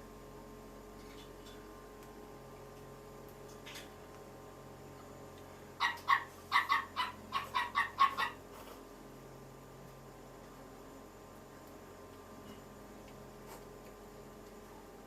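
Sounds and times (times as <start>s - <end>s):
animal calling: 5.8s - 8.4s.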